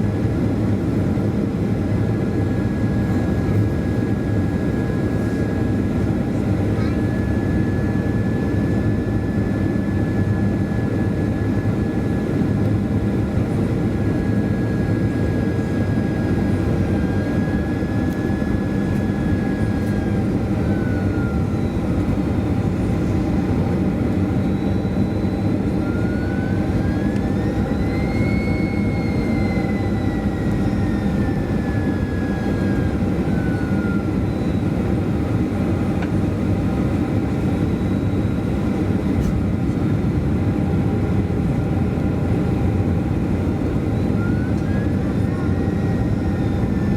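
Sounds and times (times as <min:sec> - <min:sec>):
jet engine whine: 0:00.0 - 0:46.9.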